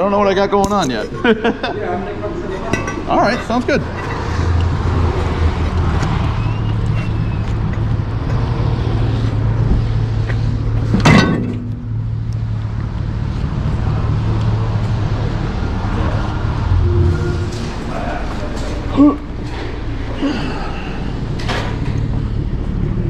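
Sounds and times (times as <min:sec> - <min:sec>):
truck engine humming: 0:02.2 - 0:23.0
sharp bang: 0:16.7 - 0:18.6.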